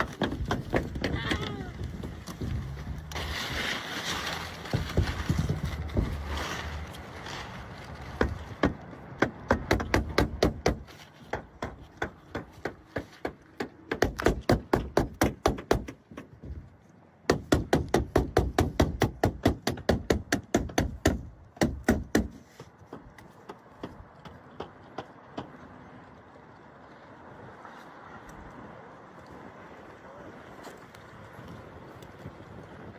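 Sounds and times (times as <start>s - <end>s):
nails hammered into roof shingles: 0.0s - 2.0s, 8.2s - 16.5s, 17.3s - 25.6s.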